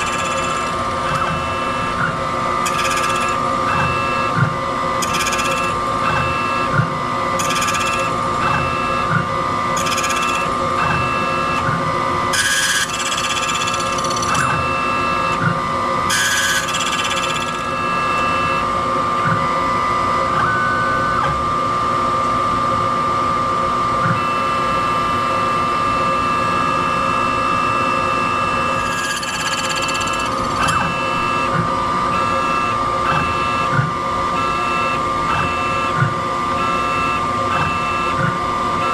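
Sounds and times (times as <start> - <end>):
key machine motor whine: 0.0 - 38.9.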